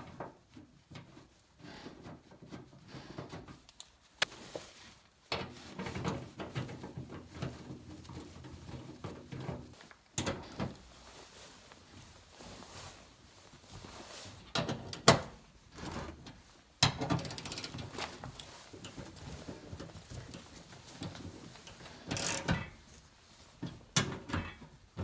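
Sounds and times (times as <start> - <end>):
hand tools clicking and knocking: 16.8 - 22.8.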